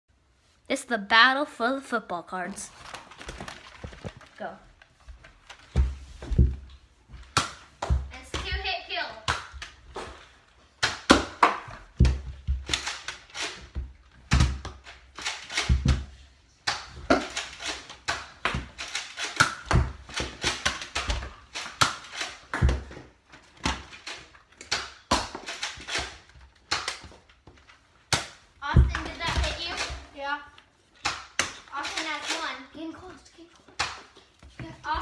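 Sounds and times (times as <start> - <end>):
foam darts hitting things: 5.7 - 14.8.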